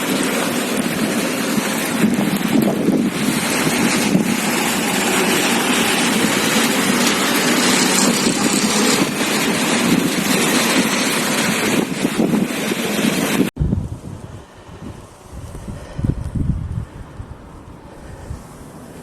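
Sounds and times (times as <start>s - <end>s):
strong wind on microphone: 0.0s - 19.0s.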